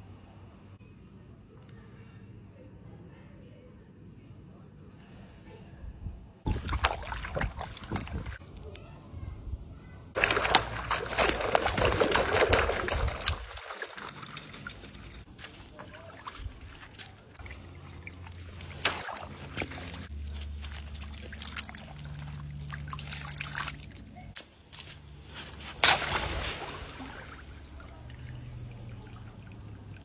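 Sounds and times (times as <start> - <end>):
water splashing: 6.5 - 8.4, 10.2 - 24.4, 25.4 - 30.0
water trickling and dripping: 10.2 - 24.4, 26.3 - 30.0.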